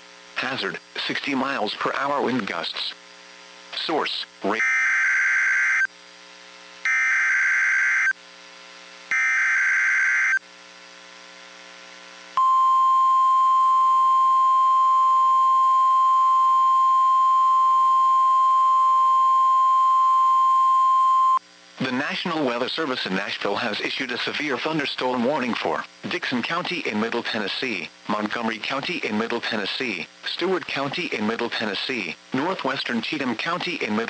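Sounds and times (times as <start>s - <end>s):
steady attention tone: 12.4s - 21.4s.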